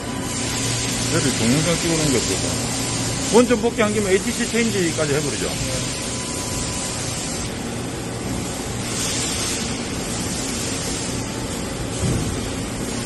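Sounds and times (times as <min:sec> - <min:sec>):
tool changer hissing: 0:00.0 - 0:07.6.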